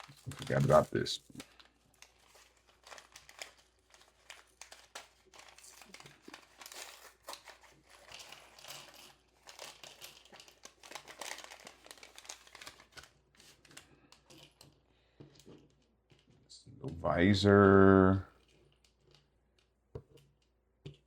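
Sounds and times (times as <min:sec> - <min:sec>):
plastic packaging crinkling: 0:00.0 - 0:14.7.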